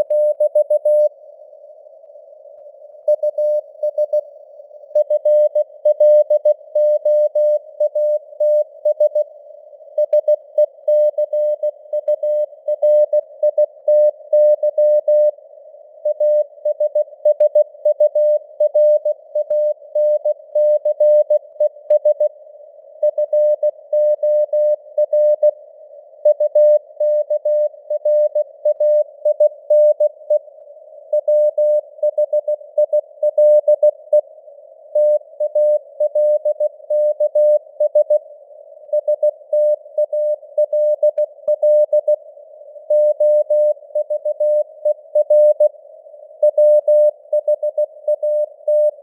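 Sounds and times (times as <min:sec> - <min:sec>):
morse code beeps: 0:39.0 - 0:42.2.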